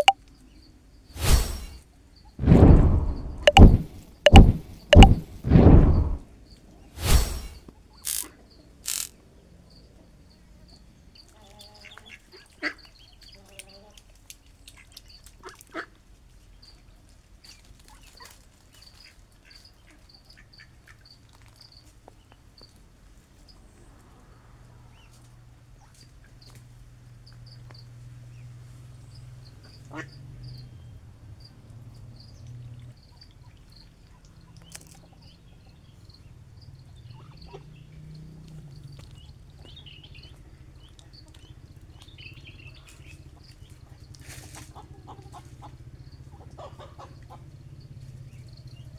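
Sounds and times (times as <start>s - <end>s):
scattered clicks: 2.4s - 6.2s, 8.0s - 8.3s, 8.9s - 9.1s.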